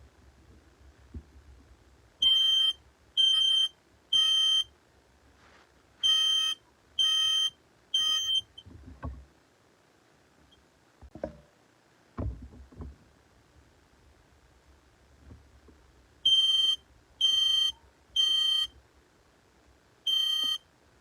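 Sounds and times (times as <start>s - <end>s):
smoke alarm beeping: 2.2s - 4.7s, 6.0s - 8.6s, 16.3s - 18.7s, 20.1s - 20.6s.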